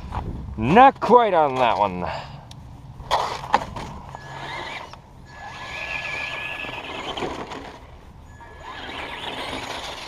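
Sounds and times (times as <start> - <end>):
electric motor whining: 4.1 - 10.0.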